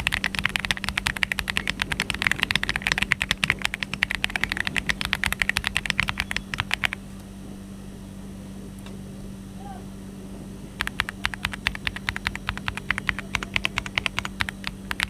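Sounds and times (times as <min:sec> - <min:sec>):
mechanical keyboard typing: 0:00.0 - 0:07.0, 0:10.8 - 0:15.0.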